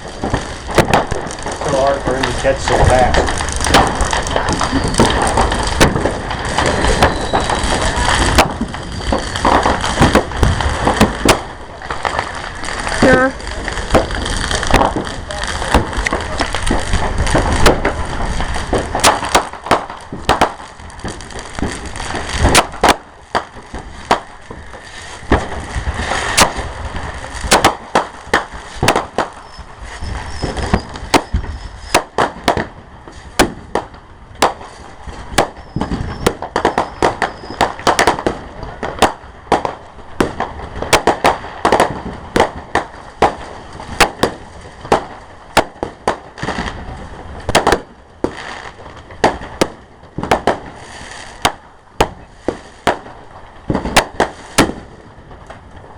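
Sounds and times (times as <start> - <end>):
fireworks bangs and cracks: 0.0 - 55.9
fireworks display rumble: 0.0 - 55.9.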